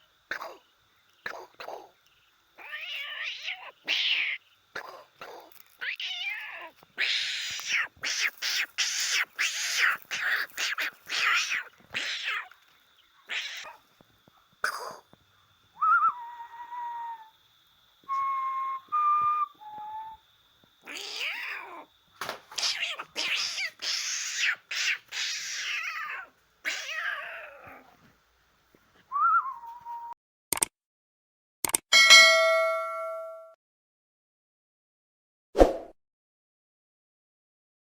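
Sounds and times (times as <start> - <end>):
cat meowing: 2.6 - 12.5, 13.3 - 13.8, 20.8 - 21.9, 22.6 - 28.0
whistle-like tones: 15.8 - 17.3, 18.0 - 20.2, 29.1 - 30.2
sharp click: 30.5 - 30.7, 31.6 - 31.9.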